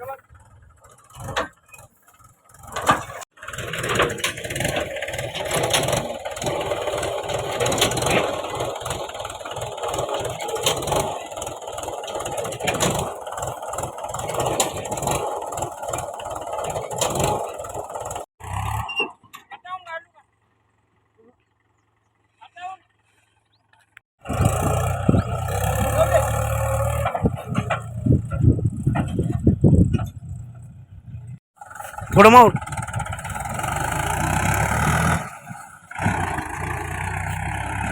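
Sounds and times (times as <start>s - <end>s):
diesel engine running: 0.0s - 19.0s, 24.2s - 37.9s
metal knocks and clanks: 0.9s - 18.2s, 24.6s - 30.4s.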